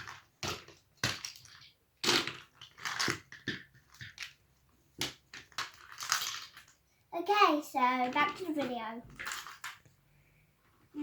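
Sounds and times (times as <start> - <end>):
plastic pieces clattering: 0.0 - 4.4, 5.0 - 6.8, 8.0 - 9.9.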